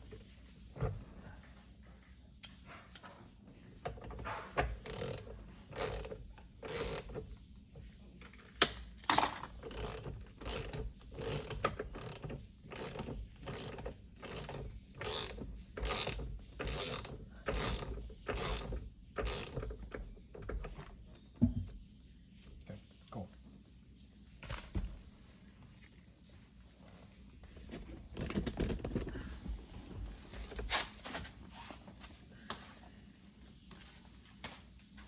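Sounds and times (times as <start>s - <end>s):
ratchet wrench clicking: 4.8s - 7.1s, 9.6s - 19.7s.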